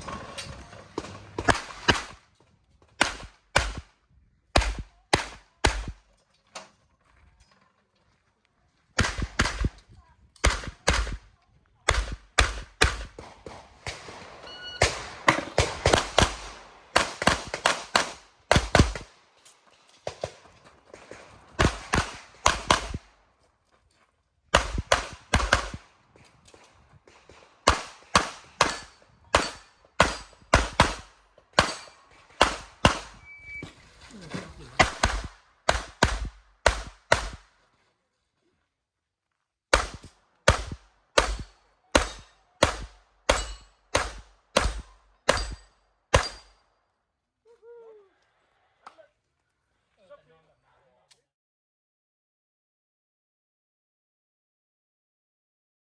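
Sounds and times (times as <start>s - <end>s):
pistol shots: 0.9s - 2.2s, 3.0s - 3.9s, 4.5s - 6.0s, 9.0s - 9.8s, 10.4s - 11.3s, 11.9s - 19.2s, 20.1s - 23.1s, 24.5s - 26.0s, 27.0s - 33.6s, 34.8s - 37.5s, 39.7s - 46.6s.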